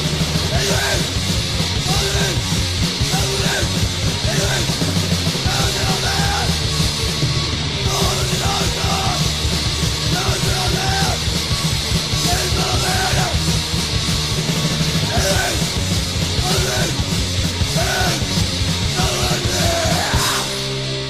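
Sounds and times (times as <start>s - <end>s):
bass guitar: 0.0s - 21.0s
distorted guitars: 0.0s - 21.0s
drums: 0.0s - 21.0s
shouted vocals: 0.4s - 1.2s, 1.8s - 2.5s, 3.1s - 4.8s, 5.4s - 6.7s, 7.9s - 9.4s, 10.1s - 11.3s, 12.2s - 13.5s, 15.0s - 20.6s.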